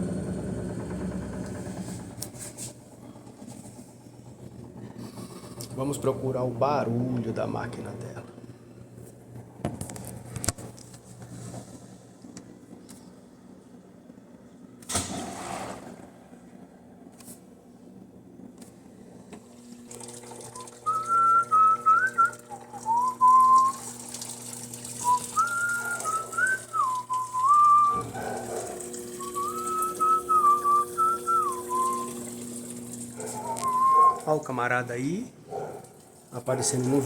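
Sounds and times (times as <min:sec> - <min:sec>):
steady hum: 0:00.0 - 0:37.0
person whistling a tune: 0:20.6 - 0:23.8, 0:25.0 - 0:28.1, 0:29.2 - 0:32.2, 0:33.5 - 0:34.2.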